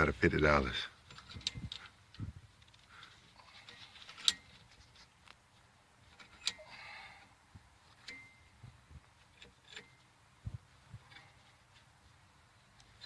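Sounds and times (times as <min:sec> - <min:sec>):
metallic clicks of tools: 0:06.2 - 0:06.6.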